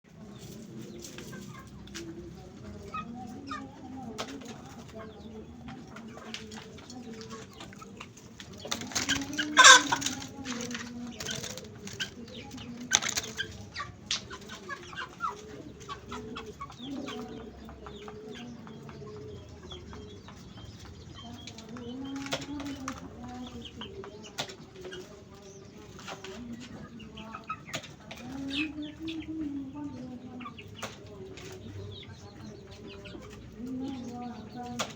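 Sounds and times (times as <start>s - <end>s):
low clucking bird calls: 0.1s - 34.9s.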